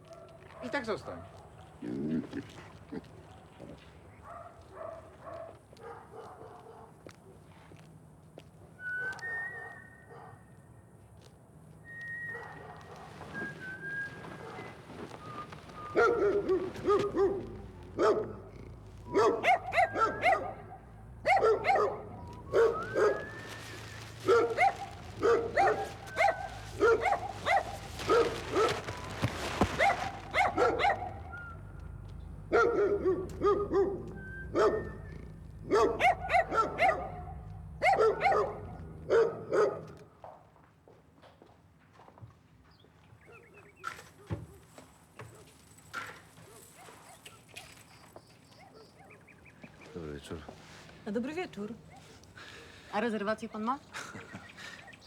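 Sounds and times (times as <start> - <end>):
dog barking: 0.0 - 2.0, 3.1 - 7.1, 9.0 - 10.6, 12.2 - 40.4, 45.2 - 47.8, 48.6 - 50.6, 51.8 - 52.7
low steady hum: 14.0 - 39.9.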